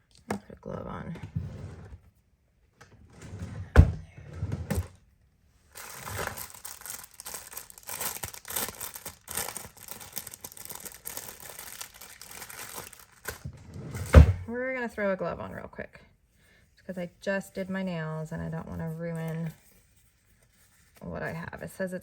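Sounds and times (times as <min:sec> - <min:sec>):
glove crinkling and rustling: 0:05.7 - 0:14.1.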